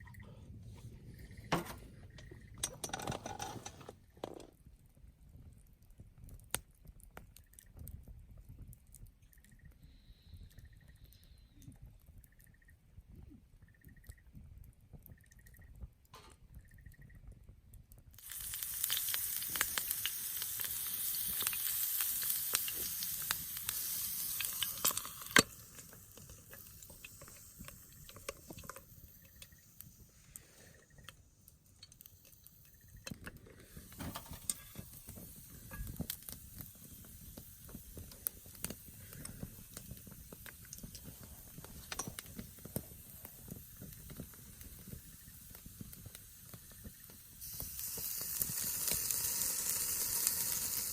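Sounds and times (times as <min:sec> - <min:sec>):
sizzling crackles and pops: 0:00.0 - 0:50.9
loud steady hiss: 0:18.2 - 0:50.9.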